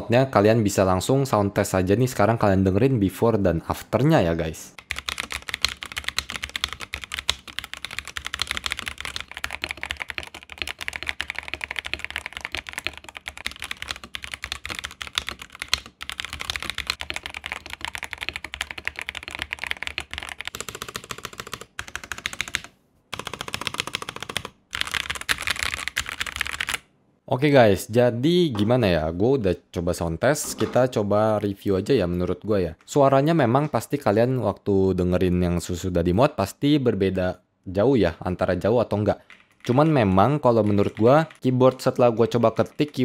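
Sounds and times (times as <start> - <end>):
fast typing on mechanical keyboard: 4.8 - 26.8, 39.2 - 43.0.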